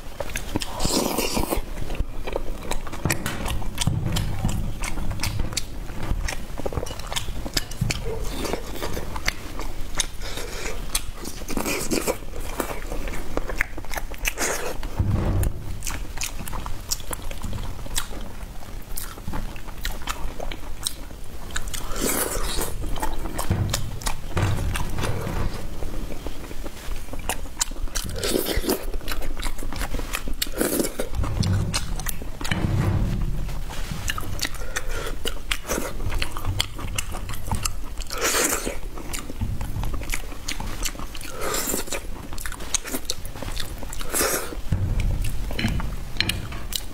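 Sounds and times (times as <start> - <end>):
crunchy chewing of food: 0.0 - 15.0, 15.8 - 32.7, 34.0 - 46.9.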